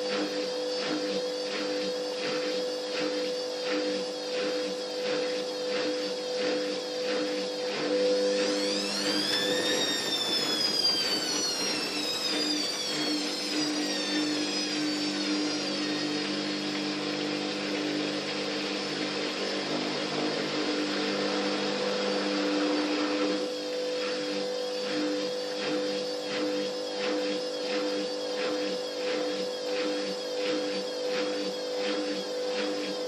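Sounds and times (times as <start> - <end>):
washing machine motor whining: 0.0 - 33.0
machine hum: 7.6 - 23.8.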